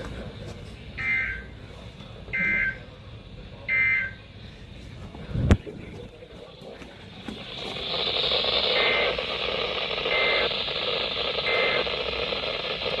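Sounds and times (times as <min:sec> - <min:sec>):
radio hiss: 0:00.0 - 0:13.0
buzzy digital data tones: 0:07.7 - 0:13.0.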